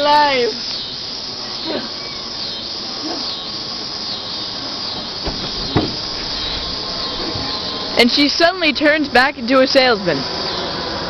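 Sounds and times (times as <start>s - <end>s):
background hiss: 0.0s - 11.0s
short thump: 5.0s - 7.4s.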